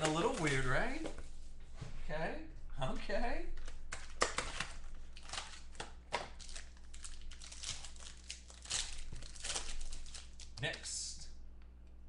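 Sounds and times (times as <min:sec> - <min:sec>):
card packaging crinkling and rustling: 0:00.0 - 0:00.8, 0:03.6 - 0:10.9.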